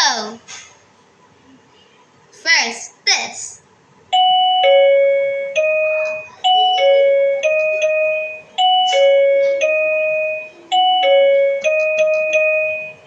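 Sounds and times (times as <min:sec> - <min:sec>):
bell-like keyboard phrase: 0:04.2 - 0:13.0.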